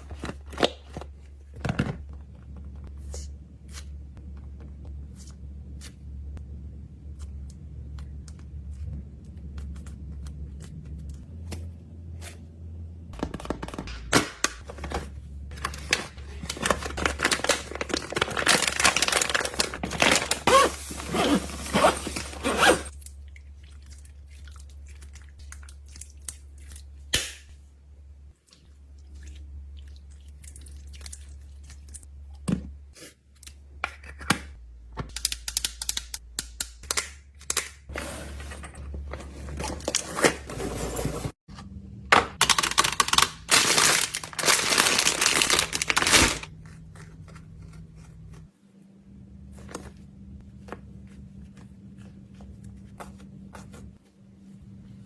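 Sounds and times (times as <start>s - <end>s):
low steady hum: 0.0s - 35.2s, 37.9s - 55.0s
packaging crinkling and tearing: 14.6s - 22.9s, 42.4s - 48.4s.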